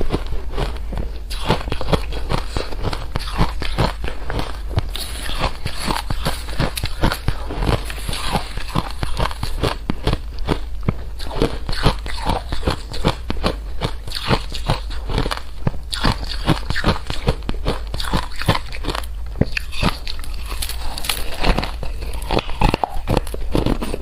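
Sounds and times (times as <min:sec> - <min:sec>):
crunchy food chewing: 0:00.0 - 0:24.0.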